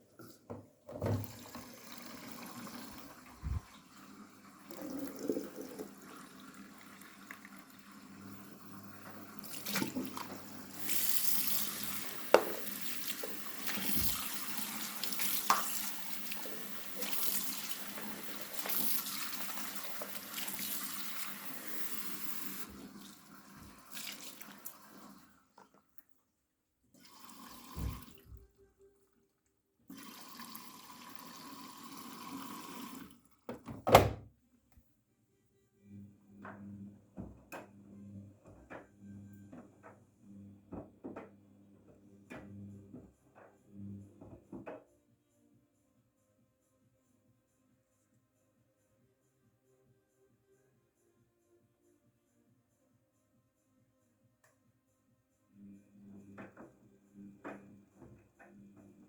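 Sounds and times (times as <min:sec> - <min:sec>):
water rushing into washing machine: 0:00.9 - 0:25.6, 0:27.0 - 0:28.4, 0:29.9 - 0:34.2.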